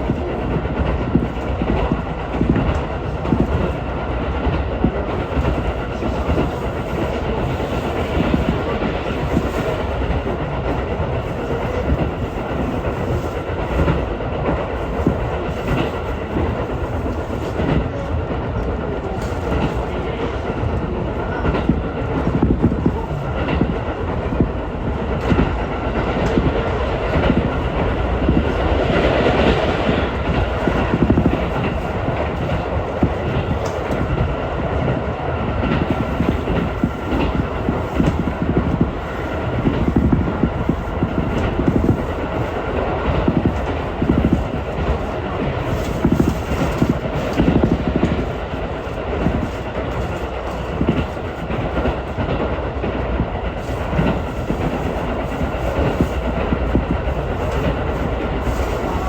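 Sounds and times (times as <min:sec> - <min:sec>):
train wheels and motors rumbling: 0:00.0 - 0:59.0.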